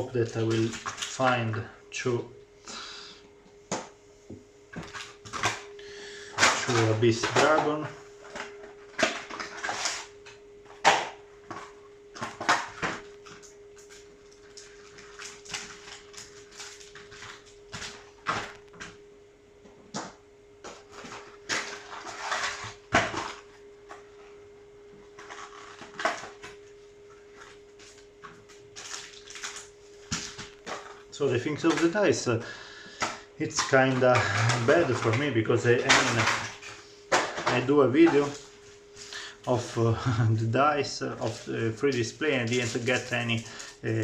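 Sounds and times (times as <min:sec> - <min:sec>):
faint steady hum: 0:00.0 - 0:44.0
cards and packaging rustling: 0:00.1 - 0:01.4, 0:04.8 - 0:10.2, 0:10.8 - 0:18.9, 0:20.6 - 0:24.1, 0:25.1 - 0:32.4, 0:33.0 - 0:39.9, 0:41.0 - 0:44.0.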